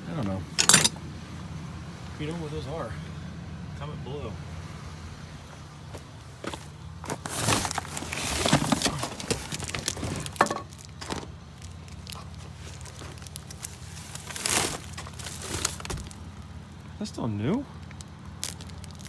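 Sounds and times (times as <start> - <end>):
rummaging through scrap by hand: 0.6 - 1.0, 6.4 - 16.5.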